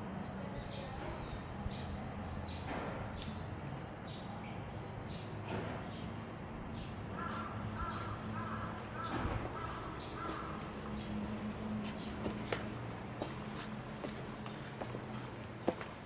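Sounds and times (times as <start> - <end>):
crow cawing: 7.1 - 11.1.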